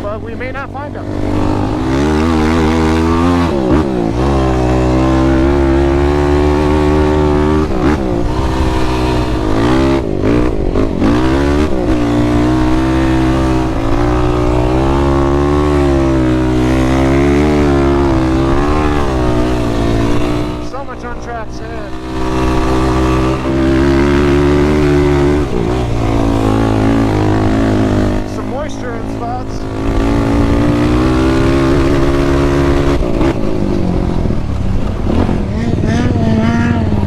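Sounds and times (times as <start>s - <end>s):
quad bike engine revving: 0.0s - 37.0s.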